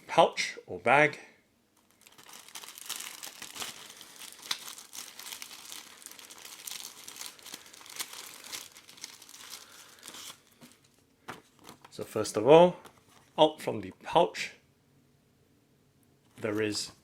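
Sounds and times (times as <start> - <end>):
plastic pouch crinkling: 1.8 - 11.9.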